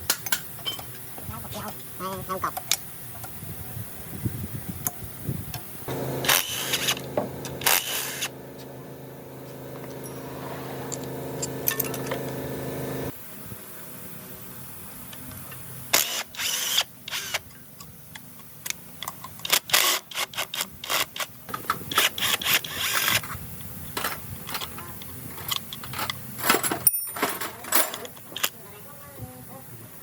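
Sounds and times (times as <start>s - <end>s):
power tool humming: 5.9s - 13.1s, 15.9s - 17.4s.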